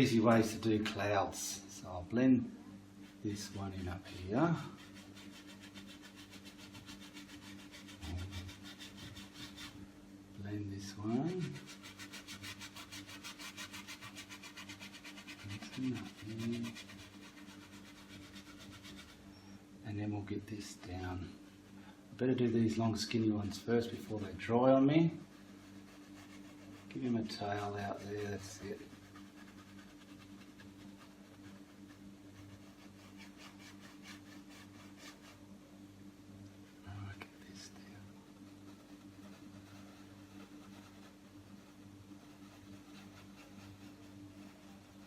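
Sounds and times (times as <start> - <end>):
steady low hum: 0.0 - 45.0
brush scrubbing on painting: 3.0 - 21.8, 22.4 - 35.5, 36.6 - 45.0.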